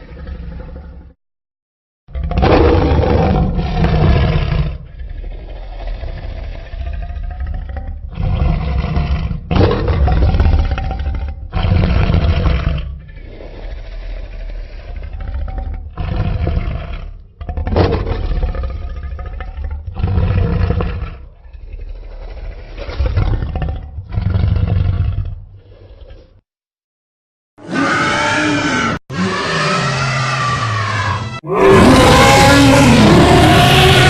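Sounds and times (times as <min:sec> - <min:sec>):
dinosaur roars: 0:02.1 - 0:26.4, 0:27.6 - 0:34.0
quiet growls: 0:02.2 - 0:26.4.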